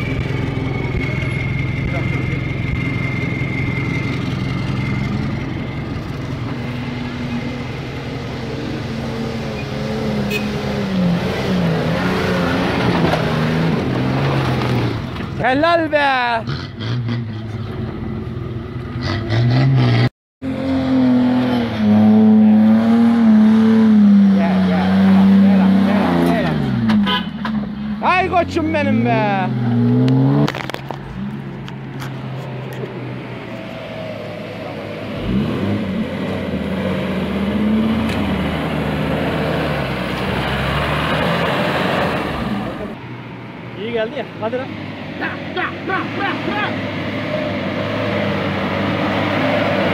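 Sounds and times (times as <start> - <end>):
off-road vehicle engine revving: 0.0 - 15.4, 16.2 - 43.0, 44.4 - 49.9
engine revving hard: 19.0 - 26.9, 34.6 - 43.0.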